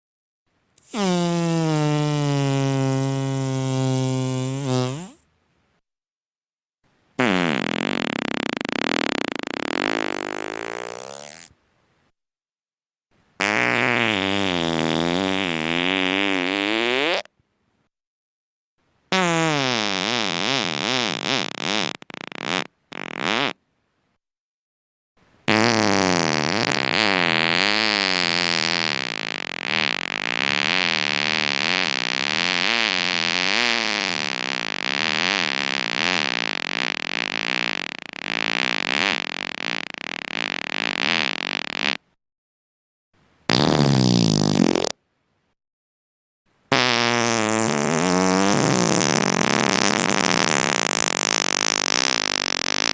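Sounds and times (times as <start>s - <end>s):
drawn-out fart sounds: 0.8s - 5.2s, 7.2s - 11.6s, 13.4s - 17.3s, 19.1s - 23.6s, 25.4s - 42.1s, 43.5s - 45.0s, 46.7s - 52.9s.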